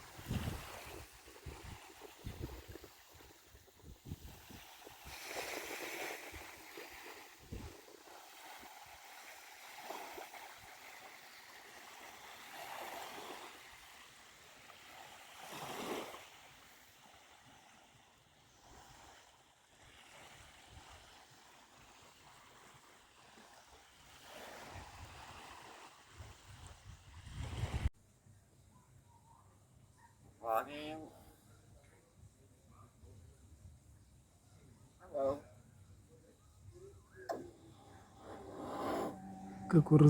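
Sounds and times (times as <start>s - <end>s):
sea waves washing onto shore: 0.0s - 27.9s.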